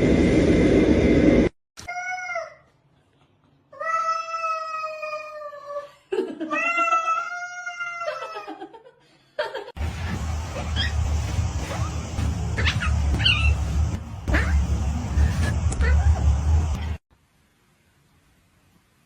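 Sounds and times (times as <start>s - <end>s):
steady noisy background: 9.8s - 17.0s.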